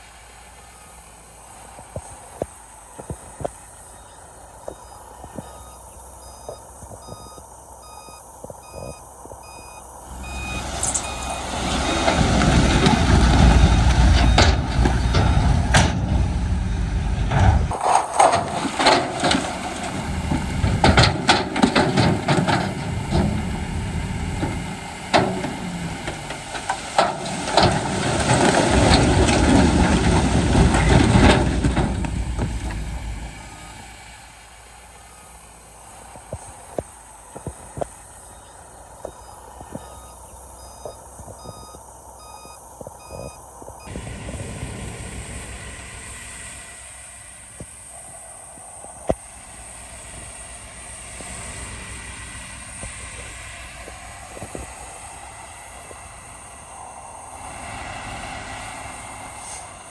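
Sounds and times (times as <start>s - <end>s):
heavy diesel engine running: 0.0s - 59.9s
reversing alarm beeping: 0.5s - 34.2s, 35.0s - 44.2s
knocks and clatter: 11.9s - 33.2s.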